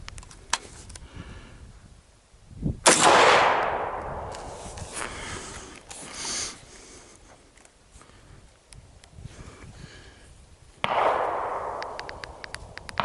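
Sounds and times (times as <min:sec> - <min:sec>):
rifle shot: 0:02.8 - 0:04.7, 0:10.8 - 0:13.0.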